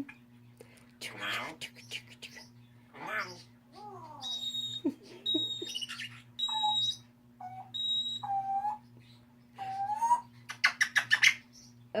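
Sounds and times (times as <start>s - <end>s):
parrot mimicking high beeps: 4.2s - 4.8s, 6.4s - 8.8s.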